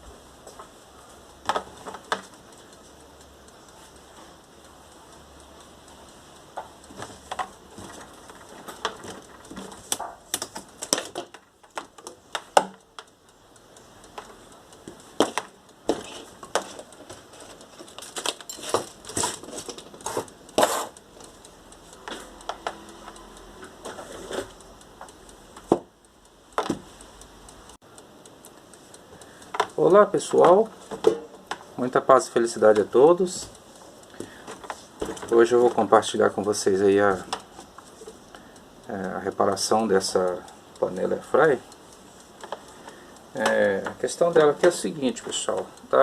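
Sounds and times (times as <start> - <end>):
low background hiss: 0.0 - 46.0
hard objects clicking and knocking: 1.4 - 2.4, 6.6 - 13.2, 14.1 - 21.2, 25.6 - 26.0, 26.6 - 26.9, 29.5 - 31.8, 33.2 - 36.0.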